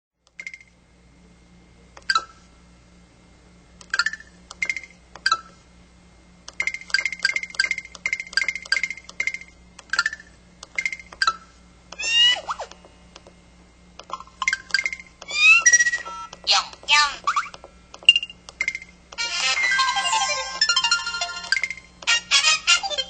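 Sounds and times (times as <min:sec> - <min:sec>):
electronic chimes and beeps: 0:14.1 - 0:16.4, 0:18.1 - 0:18.9.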